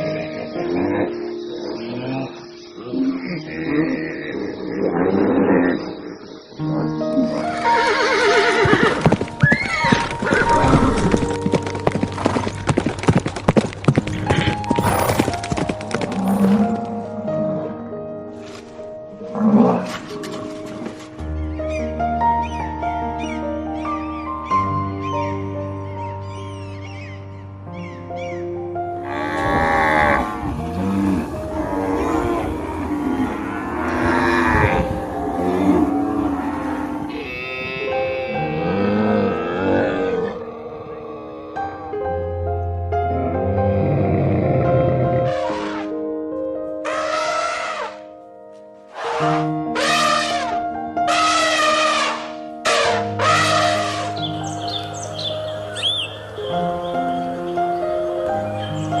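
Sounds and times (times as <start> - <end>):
background music held notes: 0.0 - 4.1, 5.7 - 59.0
animal call wavering: 49.0 - 58.9.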